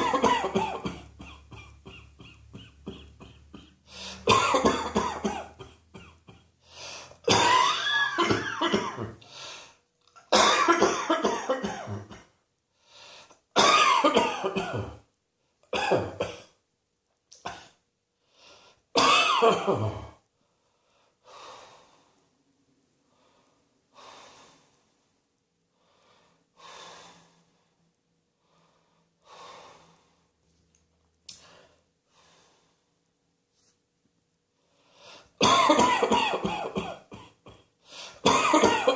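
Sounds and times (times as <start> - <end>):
person coughing hard: 0.0 - 6.5, 7.3 - 9.2, 10.3 - 12.3, 13.6 - 15.0, 15.7 - 16.6, 19.0 - 20.2, 35.4 - 38.9
faint breaths: 3.8 - 4.3, 6.6 - 7.2, 9.2 - 9.8, 12.7 - 13.5, 18.2 - 18.9, 20.4 - 30.5, 31.3 - 33.8, 34.5 - 35.4, 37.8 - 38.2.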